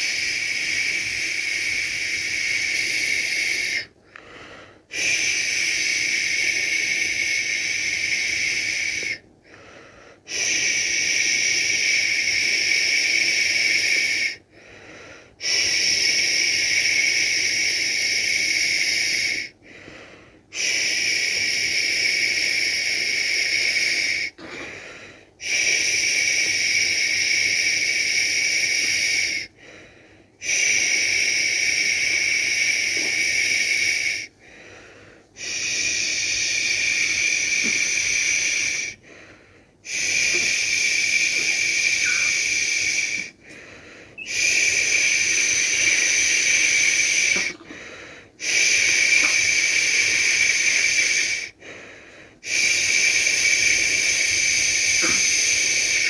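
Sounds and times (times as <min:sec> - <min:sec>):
person shushing: 0:39.9 - 0:43.3, 0:44.2 - 0:51.4, 0:52.8 - 0:56.0.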